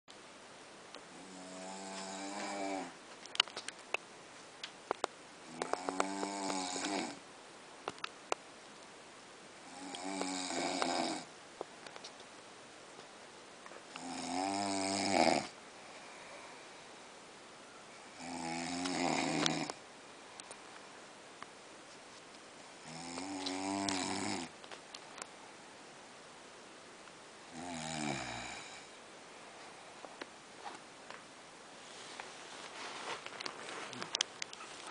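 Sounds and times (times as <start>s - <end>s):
man snoring: 1.2s - 3.0s, 5.5s - 7.2s, 9.6s - 11.3s, 14.0s - 15.6s, 18.2s - 19.8s, 22.8s - 24.5s, 27.5s - 28.9s.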